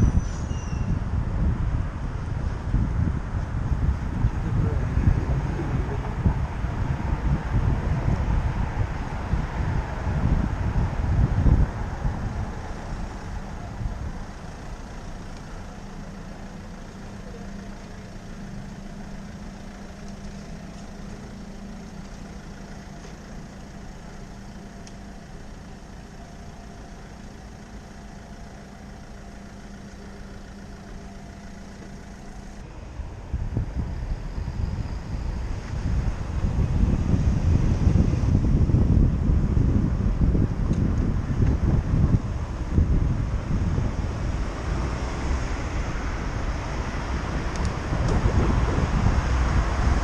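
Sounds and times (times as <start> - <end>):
wind noise on microphone: 0.0 - 14.5, 32.8 - 50.0
vehicle engine idling: 0.0 - 50.0.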